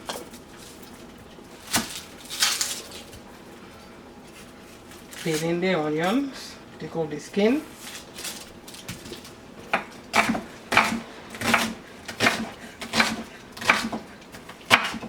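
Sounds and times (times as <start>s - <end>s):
knife chopping on cutting board: 8.9s - 15.0s.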